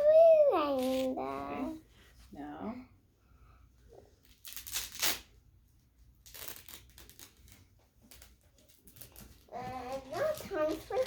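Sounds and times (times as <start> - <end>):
paper and cardboard rustling: 6.3 - 11.0.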